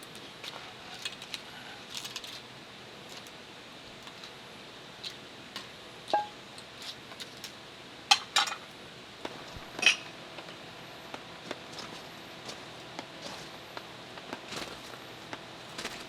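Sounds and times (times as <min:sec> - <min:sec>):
cookware and utensils clinking: 0:09.8 - 0:10.1.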